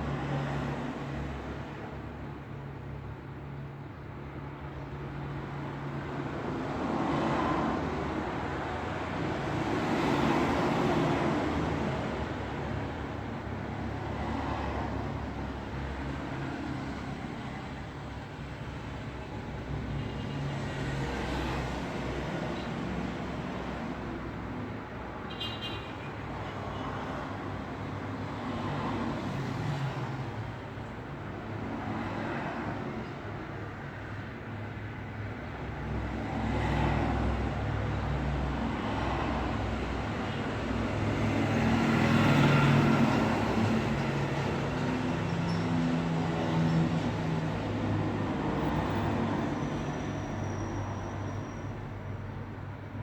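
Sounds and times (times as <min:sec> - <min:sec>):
road traffic rushing: 0:05.2 - 0:53.0
cars passing: 0:35.3 - 0:53.0.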